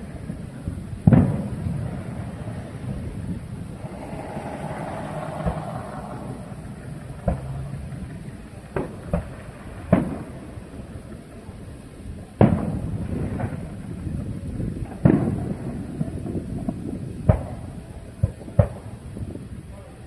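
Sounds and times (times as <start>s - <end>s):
low rumble: 0.0s - 9.8s
fireworks bangs: 0.0s - 19.9s.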